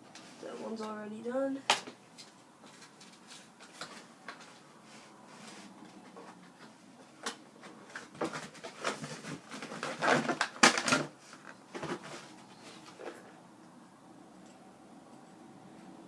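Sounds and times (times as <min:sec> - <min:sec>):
packaging rustling: 0:07.2 - 0:13.2.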